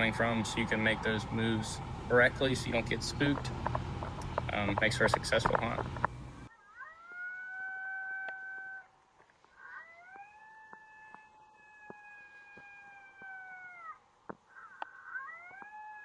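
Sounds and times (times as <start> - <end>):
coyote howling: 6.5 - 9.0, 9.6 - 16.0.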